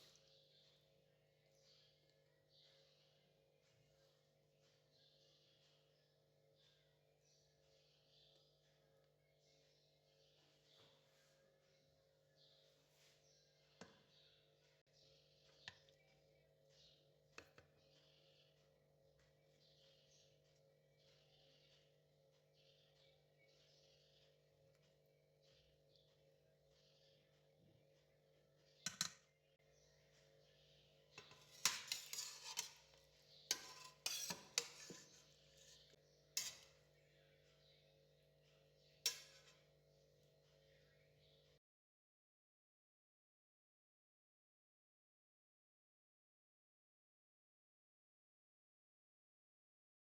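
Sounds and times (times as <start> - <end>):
metal utensils clinking on dishes: 31.1 - 36.8, 39.1 - 39.6.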